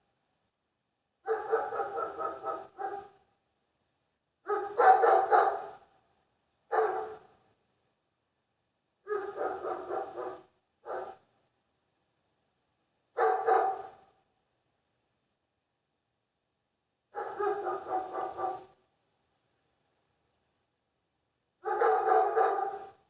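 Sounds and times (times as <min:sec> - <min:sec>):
dog barking: 0:01.2 - 0:03.2, 0:04.4 - 0:05.9, 0:06.7 - 0:07.3, 0:09.1 - 0:11.3, 0:13.2 - 0:14.1, 0:17.1 - 0:18.8, 0:21.6 - 0:23.0.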